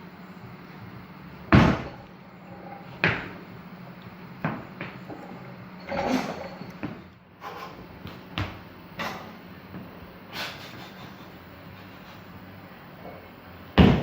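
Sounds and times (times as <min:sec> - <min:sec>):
barbell thudding on platform: 0:01.5 - 0:02.0, 0:03.0 - 0:03.4, 0:13.8 - 0:14.0
metal plates clattering: 0:05.1 - 0:06.7.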